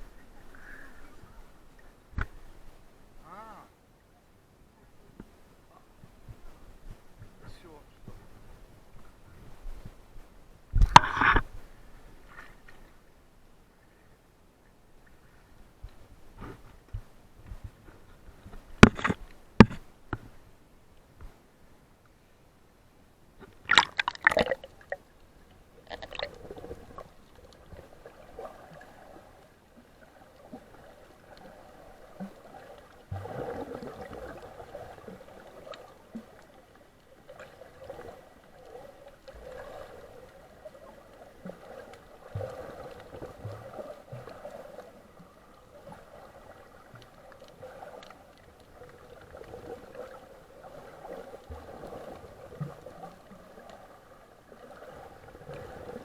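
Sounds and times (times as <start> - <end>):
seawater gurgling and sloshing: 23.4 - 56.0
rushing water: 23.5 - 56.0
loud water splashing: 23.7 - 25.0.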